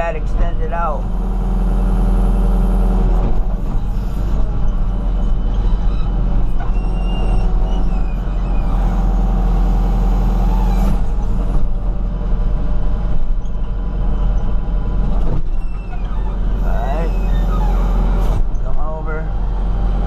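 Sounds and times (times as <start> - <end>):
diesel engine running under load: 0.0 - 20.0
hoe digging asphalt: 1.0 - 12.1
faint hydraulic whines: 2.8 - 11.7, 15.2 - 18.7.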